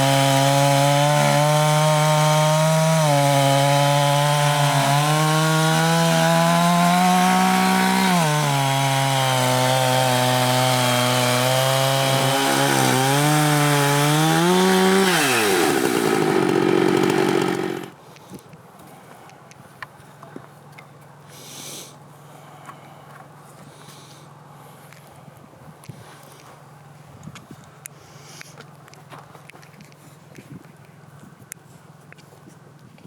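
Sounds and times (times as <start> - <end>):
chainsaw cutting log: 0.0 - 18.0.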